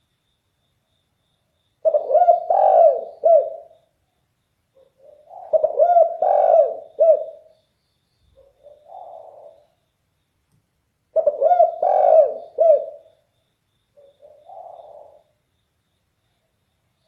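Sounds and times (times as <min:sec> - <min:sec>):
dove cooing: 0:01.8 - 0:03.8, 0:04.8 - 0:07.5, 0:08.4 - 0:09.8, 0:11.1 - 0:13.2, 0:14.0 - 0:15.3.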